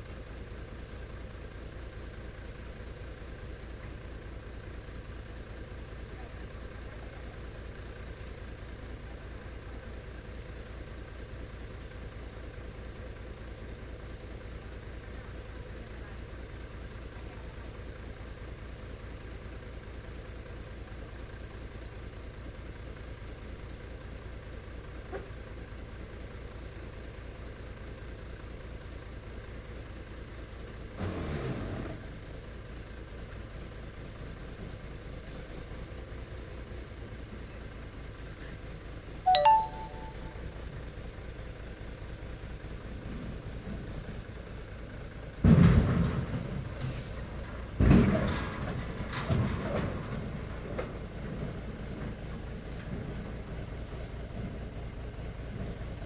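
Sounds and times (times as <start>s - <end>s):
diesel truck engine idling: 0.0s - 31.0s, 31.8s - 56.0s
loud clunk: 45.4s - 50.2s.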